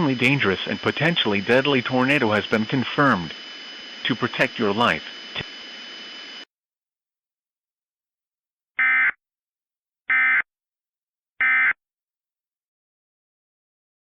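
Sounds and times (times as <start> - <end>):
digital data tone bursts: 0.0 - 6.4.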